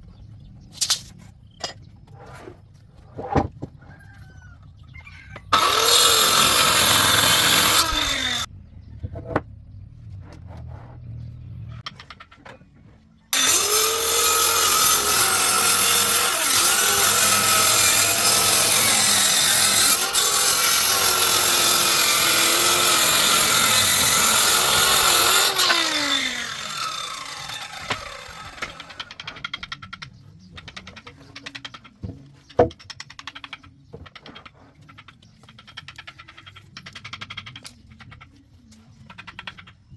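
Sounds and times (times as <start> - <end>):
power tool cutting wood: 5.5 - 8.5, 13.4 - 29.3.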